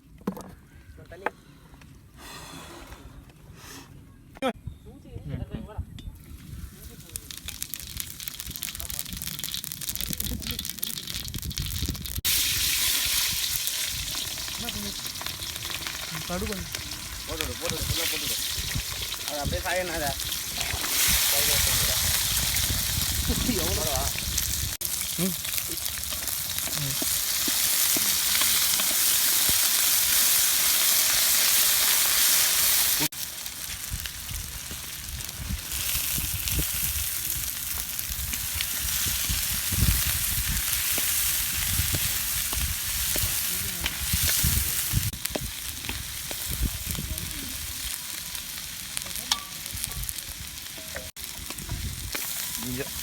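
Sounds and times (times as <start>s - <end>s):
food sizzling in oil: 6.2s - 53.0s.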